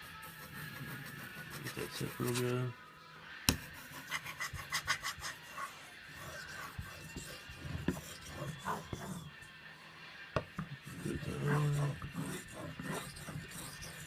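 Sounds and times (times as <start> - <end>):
knife scraping on whetstone: 0.4 - 2.6, 3.7 - 9.3, 10.9 - 14.0.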